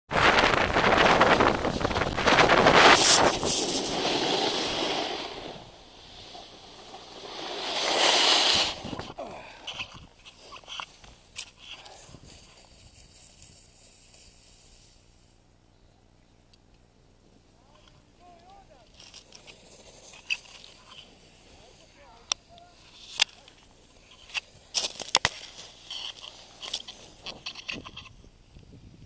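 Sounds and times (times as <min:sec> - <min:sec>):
wind rushing over microphone: 0:00.1 - 0:09.2, 0:27.2 - 0:29.0
skis hissing on snow: 0:00.2 - 0:15.2, 0:18.2 - 0:27.2.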